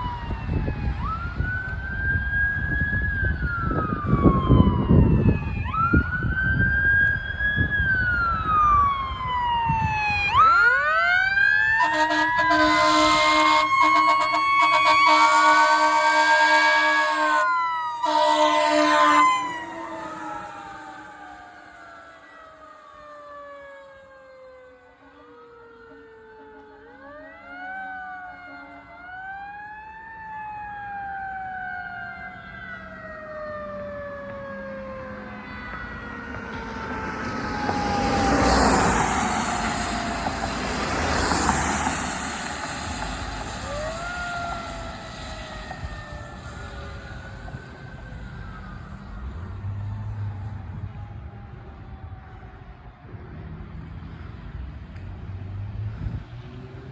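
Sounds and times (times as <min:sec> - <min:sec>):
electronic siren wailing: 0:00.0 - 0:53.5
mechanical siren winding down: 0:00.0 - 0:53.6
engine and road noise: 0:00.0 - 0:56.9
fire truck air horn: 0:11.6 - 0:21.8, 0:26.4 - 0:29.2, 0:36.5 - 0:47.1.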